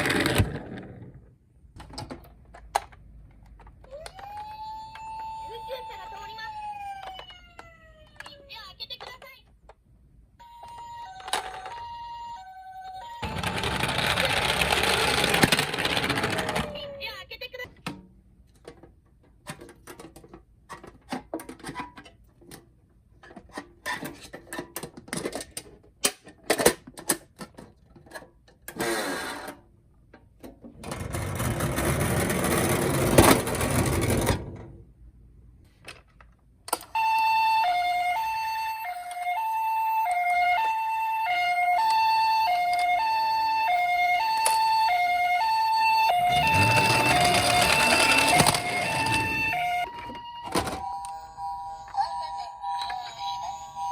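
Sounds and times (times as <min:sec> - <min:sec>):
toy cars clicking and clattering: 0:00.0 - 0:01.2, 0:01.8 - 0:09.8, 0:10.6 - 0:12.0, 0:13.2 - 0:17.1, 0:18.5 - 0:34.7, 0:40.0 - 0:51.2
toy ambulance two-tone siren: 0:03.9 - 0:08.5, 0:10.4 - 0:15.4, 0:16.0 - 0:17.1, 0:36.8 - 0:53.9
rattling noise: 0:13.2 - 0:16.8, 0:46.1 - 0:49.9.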